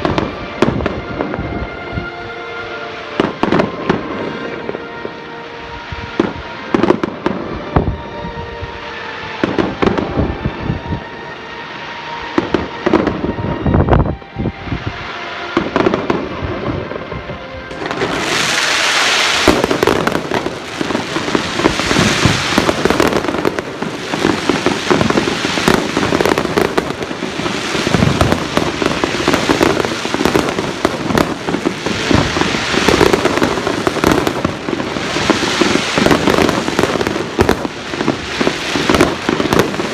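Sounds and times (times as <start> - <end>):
crackling fireworks barrage: 0.0 - 1.6, 3.2 - 11.1, 11.8 - 39.9
background music: 0.0 - 39.9
fireworks bangs: 17.7 - 39.9.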